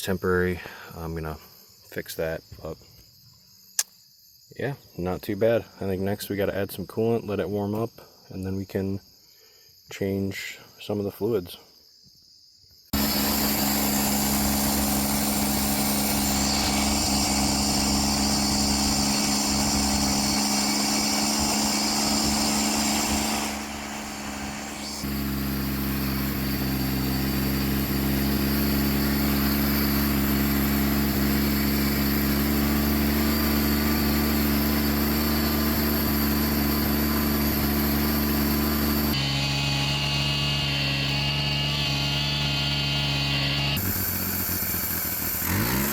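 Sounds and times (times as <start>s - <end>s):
gas engine running: 13.0s - 45.9s.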